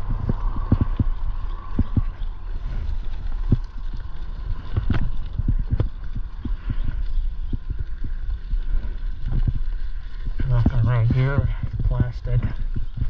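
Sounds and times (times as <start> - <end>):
irregular knocks and thuds: 0.0 - 2.2
steady low rumble: 0.0 - 13.0.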